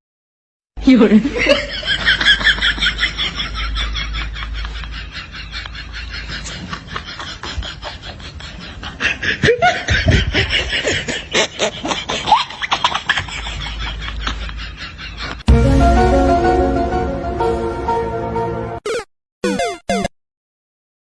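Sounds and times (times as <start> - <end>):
laughter in quick bursts: 1.3 - 15.5.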